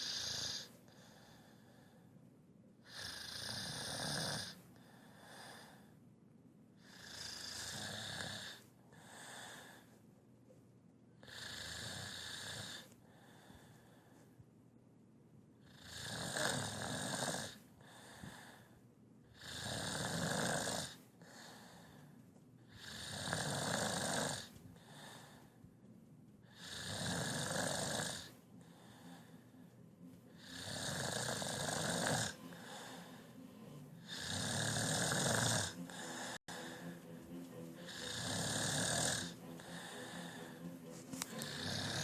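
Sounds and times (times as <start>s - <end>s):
person snoring: 0.0s - 1.8s, 2.8s - 4.6s, 6.8s - 9.8s, 11.2s - 13.7s, 15.6s - 18.7s, 19.3s - 22.1s, 22.7s - 25.4s, 26.4s - 29.6s, 30.3s - 42.0s
soft breathing: 0.0s - 3.4s, 4.4s - 6.1s, 6.8s - 10.6s, 11.2s - 14.6s, 17.5s - 19.6s, 20.9s - 23.3s, 24.3s - 27.0s, 28.2s - 42.0s.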